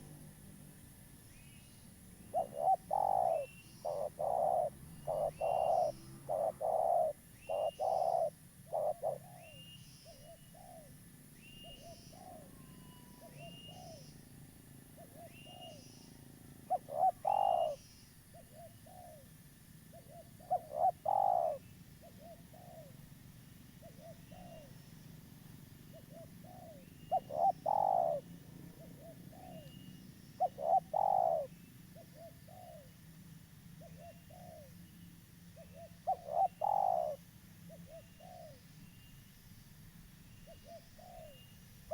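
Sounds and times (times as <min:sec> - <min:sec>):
dove cooing: 0:02.2 - 0:11.0, 0:11.6 - 0:14.1, 0:15.0 - 0:15.8, 0:16.5 - 0:23.1, 0:23.8 - 0:24.8, 0:25.9 - 0:29.8, 0:30.4 - 0:33.0, 0:33.8 - 0:34.8, 0:35.5 - 0:38.6, 0:40.5 - 0:41.4.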